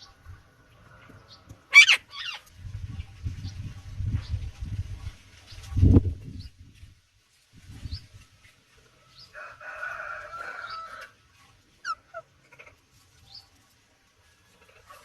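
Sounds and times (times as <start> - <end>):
long harsh bird call: 1.7 - 2.4
high bird chirps: 1.7 - 2.5.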